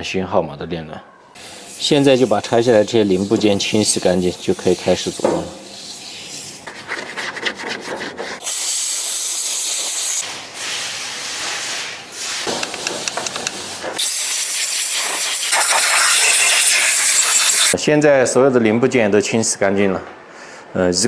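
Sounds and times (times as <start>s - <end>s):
hissing spray jets: 1.4s - 6.7s, 8.4s - 10.6s, 11.8s - 17.8s
scratchy rubbing strokes: 1.4s - 8.4s, 9.4s - 14.0s.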